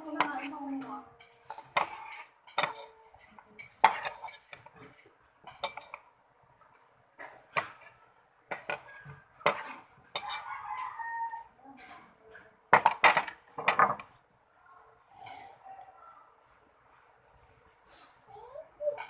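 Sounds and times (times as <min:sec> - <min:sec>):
cutlery scraping a plate: 0:00.1 - 0:06.1, 0:06.7 - 0:14.1.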